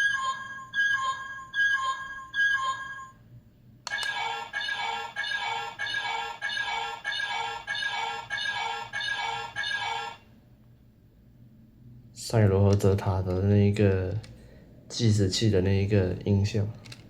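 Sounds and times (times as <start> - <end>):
toy speaker electronic beeping: 3.9 - 10.2.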